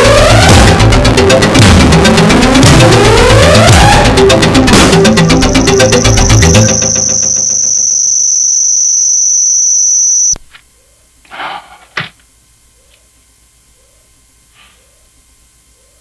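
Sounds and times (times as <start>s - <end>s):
high-pitched electronic tone: 2.0s - 10.4s.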